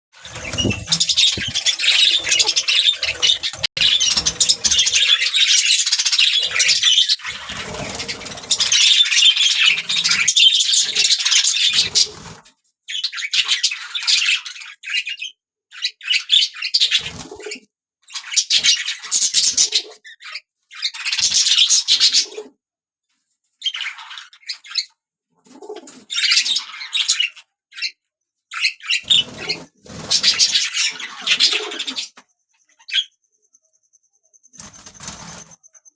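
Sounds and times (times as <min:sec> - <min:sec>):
budgerigars chattering: 0:00.3 - 0:12.1.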